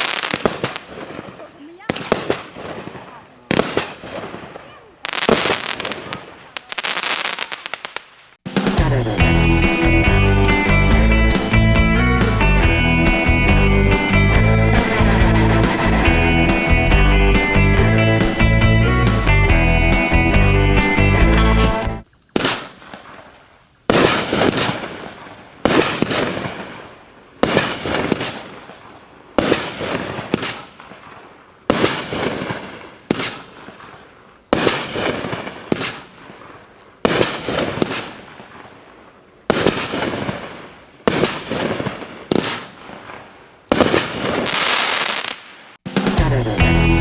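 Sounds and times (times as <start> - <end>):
firework shots: 0.0 - 8.8, 22.2 - 45.8.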